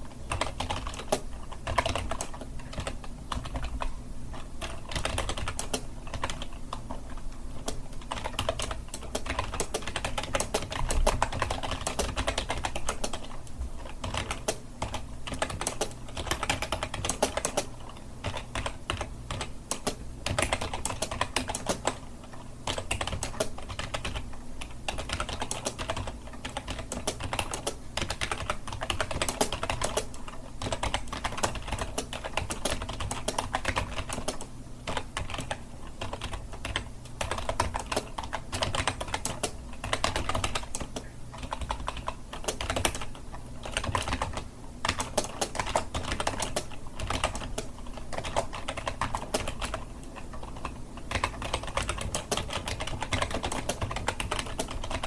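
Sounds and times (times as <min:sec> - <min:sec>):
fast typing on keyboard: 0:00.2 - 0:55.0.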